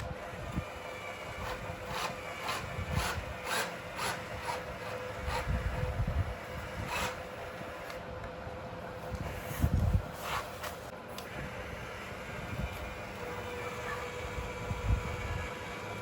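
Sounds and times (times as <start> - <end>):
small electric motor whine: 0.0 - 8.0, 11.2 - 16.0.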